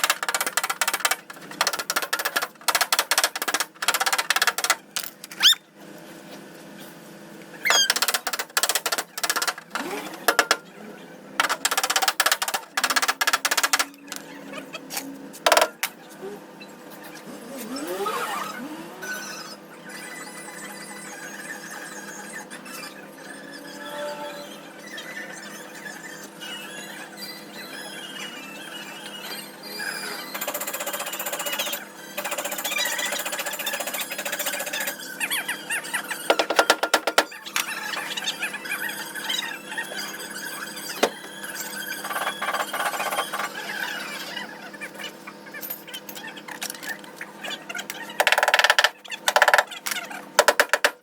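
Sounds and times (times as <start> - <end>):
rapid metallic knocks: 0.0 - 4.8, 7.8 - 10.6, 11.4 - 14.2, 36.3 - 37.3, 50.4 - 51.0
faint squeaky chirps: 5.4 - 5.7, 7.6 - 8.0, 18.2 - 36.3
power tool hammering: 7.8 - 10.7, 36.3 - 37.3, 50.4 - 51.0.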